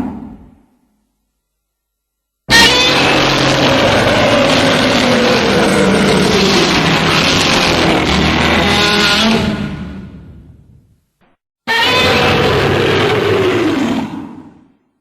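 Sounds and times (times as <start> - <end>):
harsh monster roar: 2.5 - 10.1, 11.7 - 14.7.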